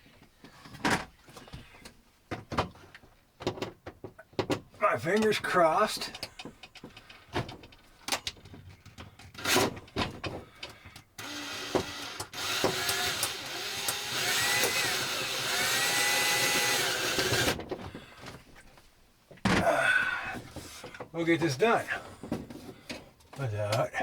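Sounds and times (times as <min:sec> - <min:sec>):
hardware clicking and knocking: 0:06.1 - 0:18.4
electric screwdriver whining: 0:11.2 - 0:17.6.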